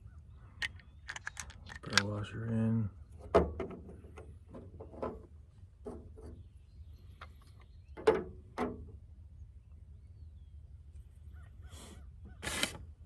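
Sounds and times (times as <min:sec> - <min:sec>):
small plastic parts clicking: 0:00.6 - 0:02.1.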